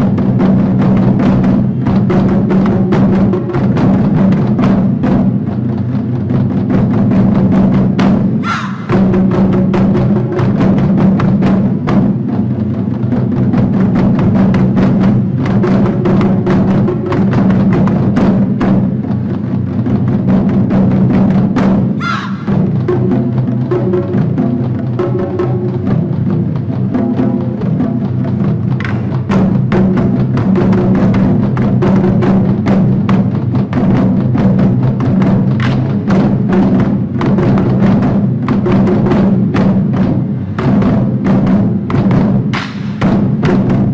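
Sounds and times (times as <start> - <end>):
taiko drums struck: 0.0 - 43.9
backing song music: 8.4 - 10.1, 22.0 - 27.9.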